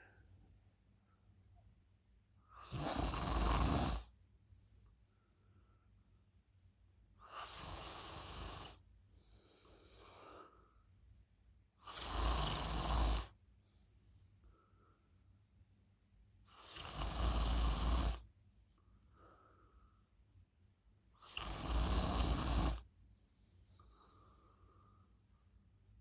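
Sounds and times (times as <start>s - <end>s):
soft breath: 0.0s - 1.3s, 9.0s - 11.0s, 18.5s - 20.2s, 23.0s - 25.6s
person snoring loudly: 2.6s - 4.1s, 16.6s - 18.2s, 21.3s - 22.8s.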